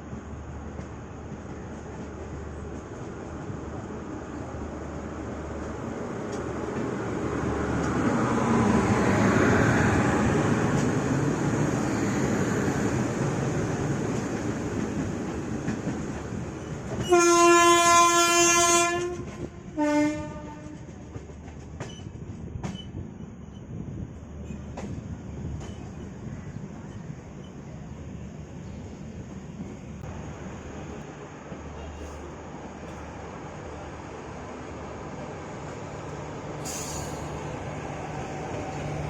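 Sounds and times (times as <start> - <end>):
moving train running noise: 0.0 - 39.0
train horn blasts: 17.0 - 20.9.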